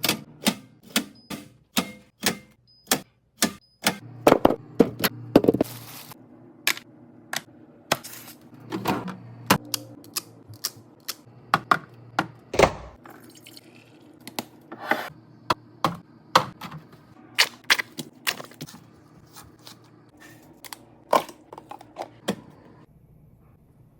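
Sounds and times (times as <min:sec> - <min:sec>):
fridge hum: 0:00.0 - 0:23.9
containers clicking and knocking: 0:21.1 - 0:22.5.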